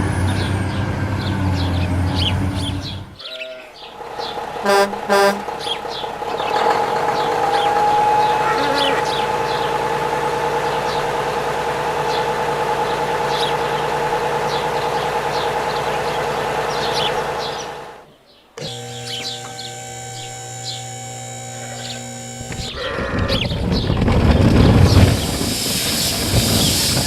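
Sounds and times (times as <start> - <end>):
birds chirping: 0.0 - 27.0
steady hum: 18.6 - 22.8.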